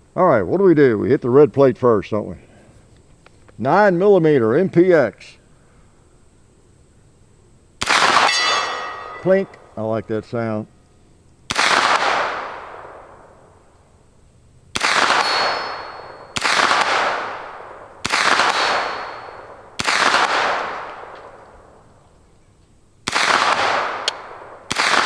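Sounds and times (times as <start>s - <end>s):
gunshots with long echo: 7.8s - 9.8s, 11.5s - 13.7s, 14.7s - 21.8s, 23.0s - 25.0s
steel target ringing: 7.9s - 9.9s, 14.9s - 16.6s, 18.5s - 19.6s.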